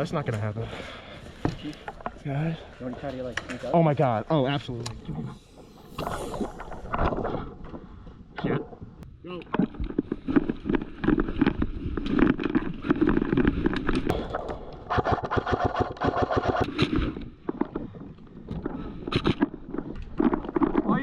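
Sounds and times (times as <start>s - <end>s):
steady pitched tone: 5.0s - 8.0s.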